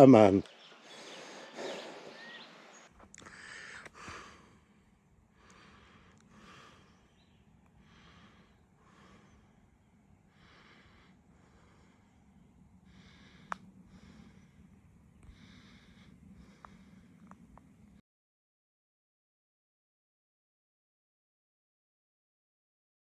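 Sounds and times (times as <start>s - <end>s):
person breathing hard: 3.1s - 17.4s.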